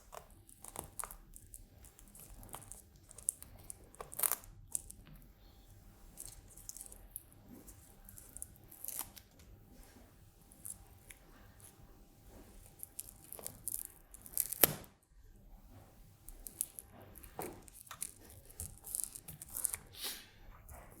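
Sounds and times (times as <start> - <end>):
tape crinkling and tearing: 12.7 - 14.9, 16.3 - 19.9.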